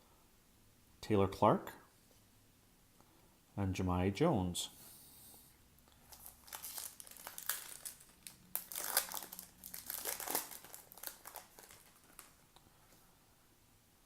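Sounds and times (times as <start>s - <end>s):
wrapper tearing and crinkling: 6.0s - 12.4s.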